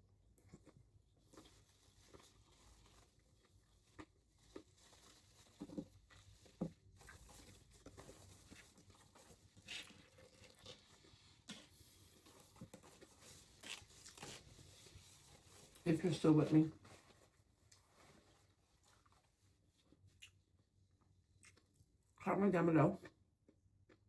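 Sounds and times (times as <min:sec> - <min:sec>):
person chewing food: 0:00.3 - 0:14.6, 0:20.1 - 0:21.9, 0:23.4 - 0:24.0.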